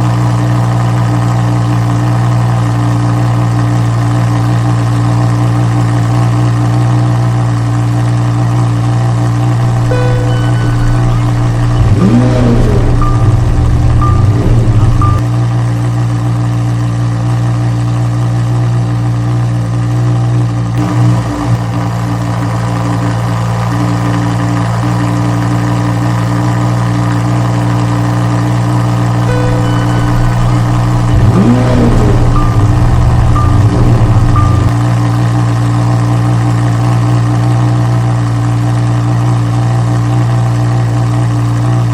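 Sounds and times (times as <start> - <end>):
car engine idling: 9.6 - 15.2, 29.3 - 34.7.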